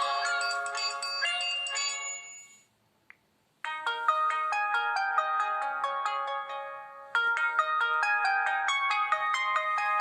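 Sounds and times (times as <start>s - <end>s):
electronic phone ringtone melody: 0.0s - 2.7s.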